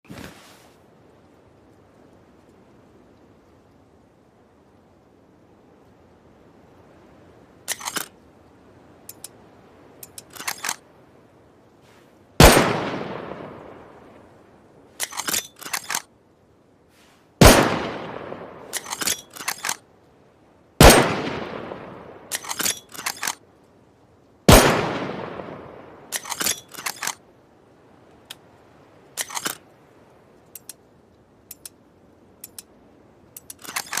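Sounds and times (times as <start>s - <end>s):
rifle bolt metallic clicks: 7.7s - 8.1s, 10.0s - 10.8s, 15.0s - 16.1s, 18.7s - 19.8s, 22.3s - 23.4s, 26.1s - 27.2s, 29.2s - 29.6s, 30.5s - 30.8s, 31.5s - 31.8s, 32.4s - 32.8s, 33.4s - 34.0s
gunshots with echo: 12.4s - 13.6s, 17.4s - 18.4s.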